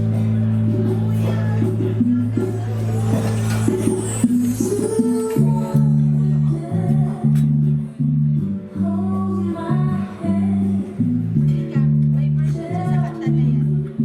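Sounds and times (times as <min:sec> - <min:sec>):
dance show music: 0:00.0 - 0:08.4
prominent bass line: 0:00.0 - 0:14.0
person singing: 0:00.8 - 0:08.1, 0:08.7 - 0:14.0.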